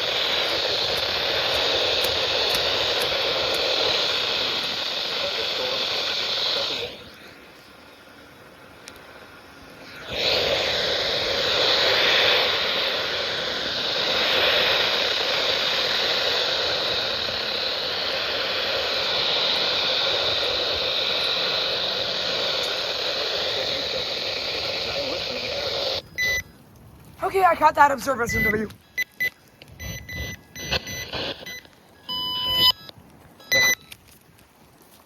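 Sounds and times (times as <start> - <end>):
wind: 0.0 - 35.0.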